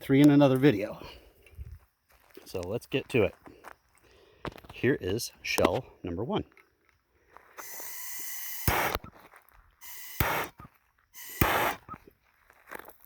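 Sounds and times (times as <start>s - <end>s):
fuse hissing: 7.6s - 9.1s, 9.8s - 12.0s
sharp click: 7.6s - 9.1s, 9.8s - 12.0s.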